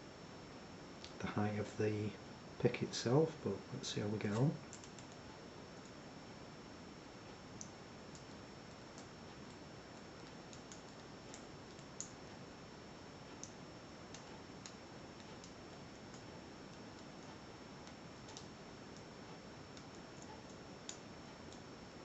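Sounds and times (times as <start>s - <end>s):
steady low hiss: 0.0s - 22.0s.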